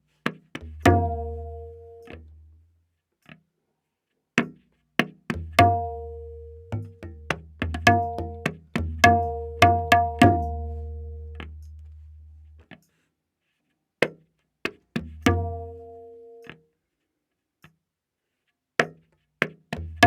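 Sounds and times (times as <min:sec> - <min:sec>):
tabla ringing strokes: 0:00.6 - 0:02.5, 0:05.3 - 0:12.7, 0:15.0 - 0:16.6.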